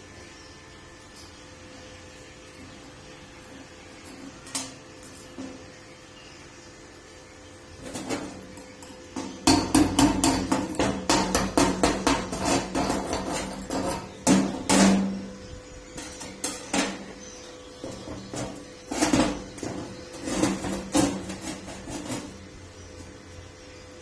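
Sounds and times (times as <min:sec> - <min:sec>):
scattered knocks: 0:09.2 - 0:15.3
hammer striking steel: 0:09.2 - 0:15.4.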